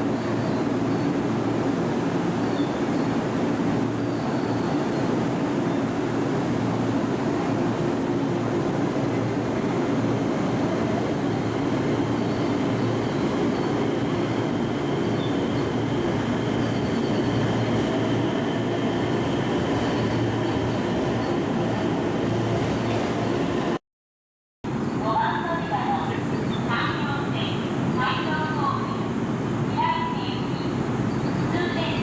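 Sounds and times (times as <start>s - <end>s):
train running noise: 0.0s - 23.8s.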